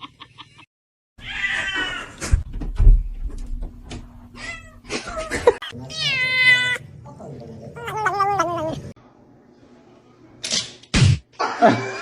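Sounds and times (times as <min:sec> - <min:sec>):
cat meowing: 0:01.2 - 0:02.1, 0:05.6 - 0:06.8, 0:07.8 - 0:08.9.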